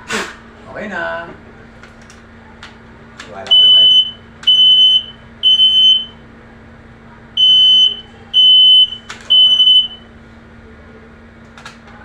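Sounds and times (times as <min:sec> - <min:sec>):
smoke alarm beeping: 0:03.5 - 0:06.2, 0:07.4 - 0:10.1.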